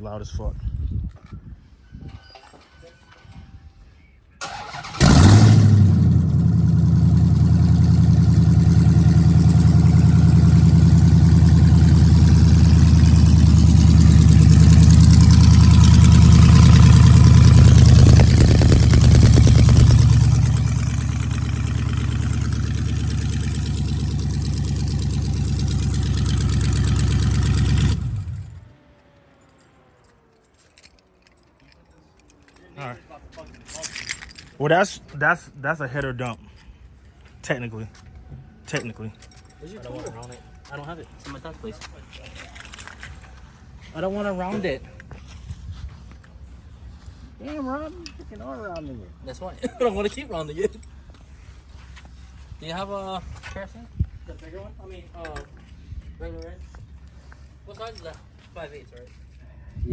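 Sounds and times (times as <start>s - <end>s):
engine cranking: 4.4s - 28.7s
loud car engine idling: 5.0s - 28.6s.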